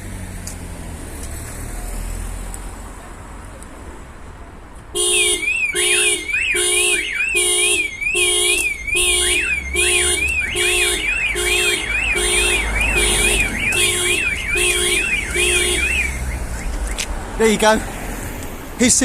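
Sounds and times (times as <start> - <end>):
car alarm pulsing horn: 5.0 - 17.7
warbling electronic siren: 5.3 - 17.0.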